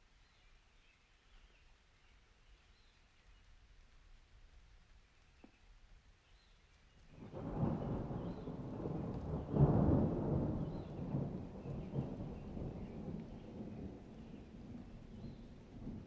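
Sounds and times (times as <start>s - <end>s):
thunder rumbling: 7.2s - 16.0s.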